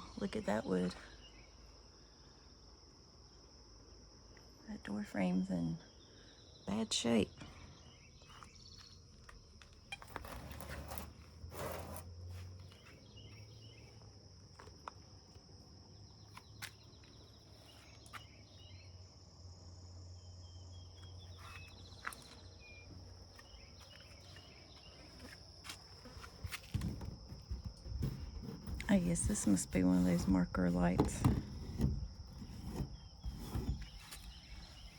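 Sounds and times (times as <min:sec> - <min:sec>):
insects trilling: 0:00.0 - 0:34.9
rustling knocks from handling: 0:25.2 - 0:34.4.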